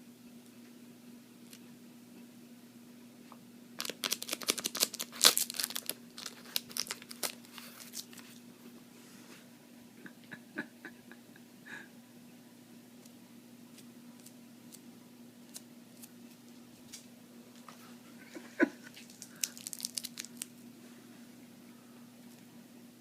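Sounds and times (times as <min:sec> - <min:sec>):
tape crackling and tearing: 0:03.8 - 0:08.4, 0:18.8 - 0:20.5.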